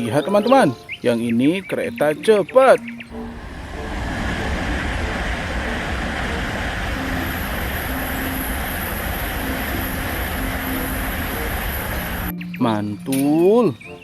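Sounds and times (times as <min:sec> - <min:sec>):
train running noise: 0:03.1 - 0:12.3.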